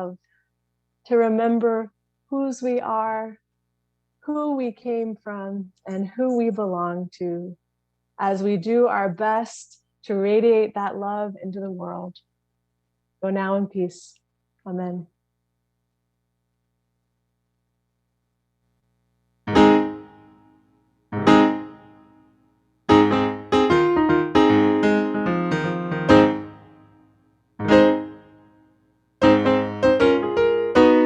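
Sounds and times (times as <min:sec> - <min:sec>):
piano playing slow chords: 0:19.5 - 0:20.5, 0:21.1 - 0:22.3, 0:22.9 - 0:31.0.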